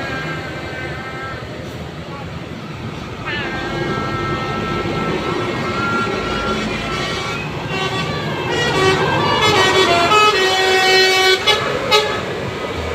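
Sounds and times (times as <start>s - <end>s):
multi-tone horn playing a melody: 3.2s - 12.3s.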